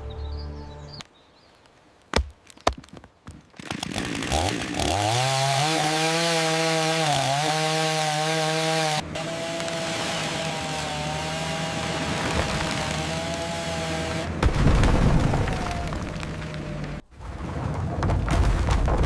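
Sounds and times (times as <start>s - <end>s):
chainsaw engine running: 3.6s - 14.3s.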